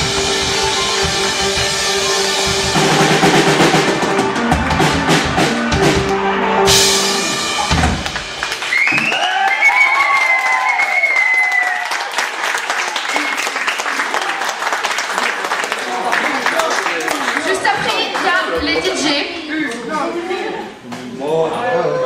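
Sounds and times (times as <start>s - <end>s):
drum rolls and cymbal crash: 0.0s - 8.8s
rock band playing: 0.0s - 9.2s
audience cheering and whistling: 7.2s - 14.1s.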